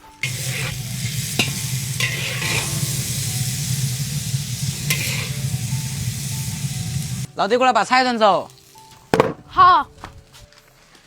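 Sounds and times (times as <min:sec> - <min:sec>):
spatula scraping a pan: 0:00.0 - 0:07.3
food sizzling in a wok: 0:00.0 - 0:07.4, 0:08.0 - 0:09.8.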